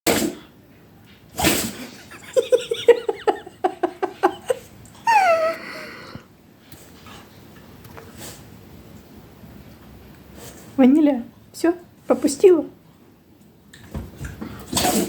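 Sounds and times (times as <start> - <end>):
loud sneeze: 1.4 - 2.0
woman giggling: 2.1 - 6.0.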